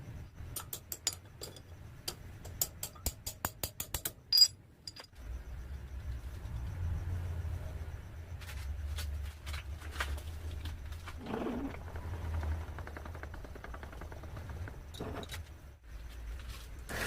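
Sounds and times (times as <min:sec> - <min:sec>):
fast rattle of ticks: 0:10.5 - 0:15.0.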